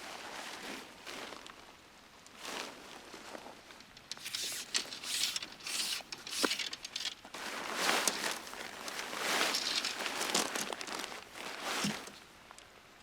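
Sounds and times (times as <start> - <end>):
rustling and crunching: 3.1 - 12.6.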